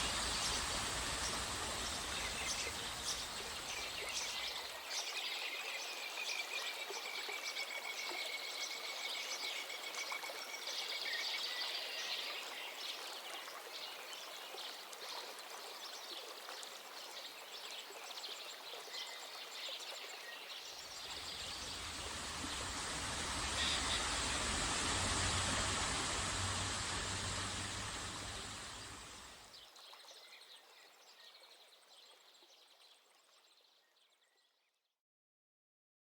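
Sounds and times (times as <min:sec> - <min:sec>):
waterfall rushing: 0:00.0 - 0:04.6, 0:20.7 - 0:29.5
birds chirping: 0:00.0 - 0:05.2, 0:20.0 - 0:29.5.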